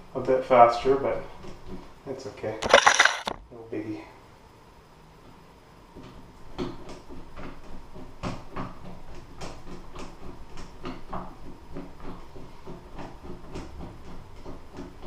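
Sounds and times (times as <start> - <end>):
screwdriver scraping clicks: 2.6 - 3.4.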